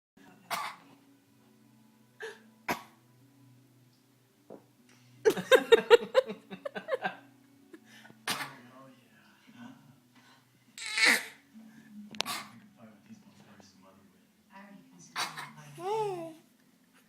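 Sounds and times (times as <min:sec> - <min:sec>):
baby coughing: 0:00.5 - 0:00.8, 0:02.7 - 0:03.0, 0:08.2 - 0:08.6, 0:10.8 - 0:11.4, 0:15.2 - 0:15.6.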